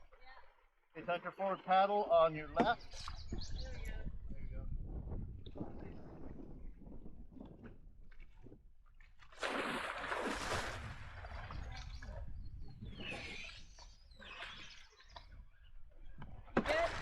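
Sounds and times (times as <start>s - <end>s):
water sloshing and dripping: 7.3s - 17.0s
person splashing into water: 9.2s - 11.7s.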